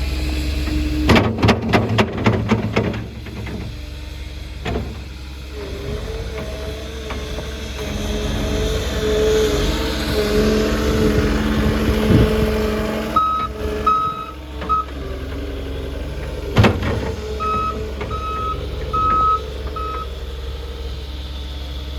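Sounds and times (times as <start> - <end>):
diesel engine running: 0.0 - 21.9
backup alarm beeps: 13.2 - 14.9, 17.4 - 20.1.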